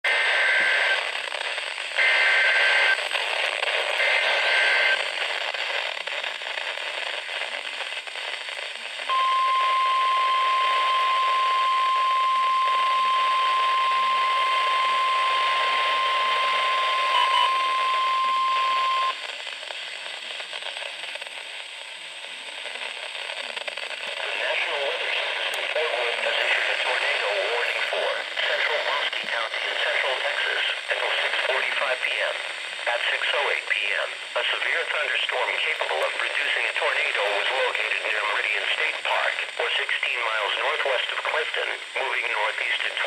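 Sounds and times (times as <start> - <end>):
radio static hiss: 0.1 - 43.0
steady warning alarm tone: 9.1 - 19.1.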